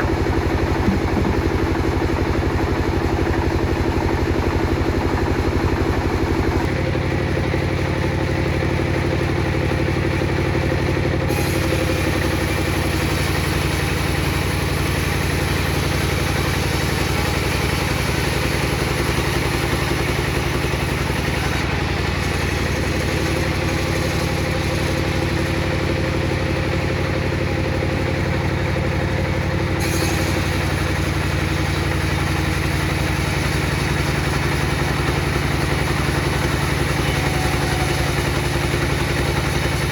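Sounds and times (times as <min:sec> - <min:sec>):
table saw running: 0:00.0 - 0:39.9
saw blade cutting wood: 0:00.6 - 0:02.0, 0:11.3 - 0:25.5, 0:29.8 - 0:39.9.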